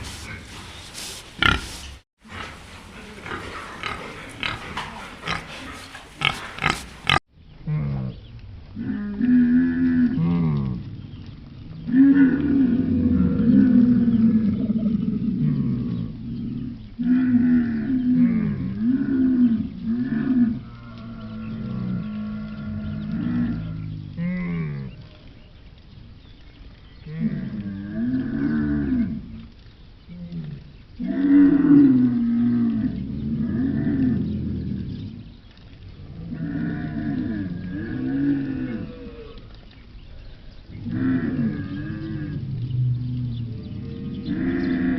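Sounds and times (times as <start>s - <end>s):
large farm animal calling: 0.0s - 8.2s.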